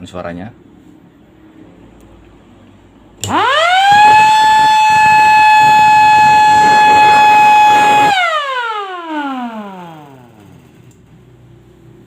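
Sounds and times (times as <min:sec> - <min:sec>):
electric motor siren: 0:03.2 - 0:10.6.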